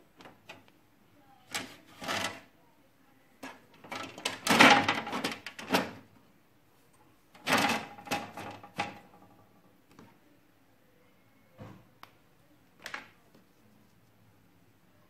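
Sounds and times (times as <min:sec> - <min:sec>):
hard parts clattering and knocking: 0:03.8 - 0:06.0, 0:07.4 - 0:09.6.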